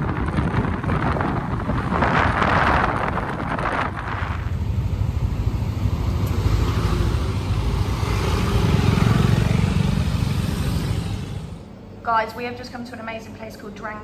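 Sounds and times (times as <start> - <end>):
wind noise on microphone: 0.0 - 11.6
moped engine running: 4.1 - 11.6.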